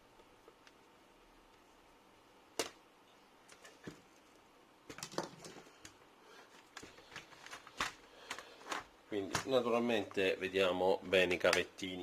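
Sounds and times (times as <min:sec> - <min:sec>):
plastic rattles: 0:04.9 - 0:05.7
plastic laptop parts clicking: 0:06.7 - 0:09.6.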